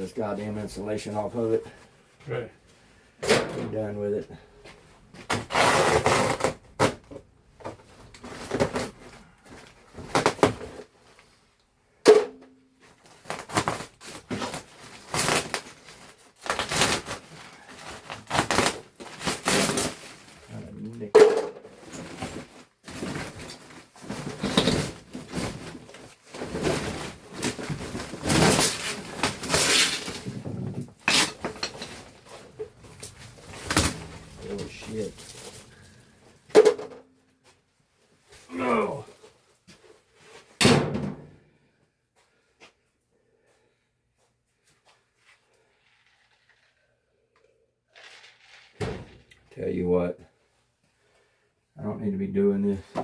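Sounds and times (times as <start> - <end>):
insulation tearing and rustling: 13.0 - 21.1, 21.8 - 36.2.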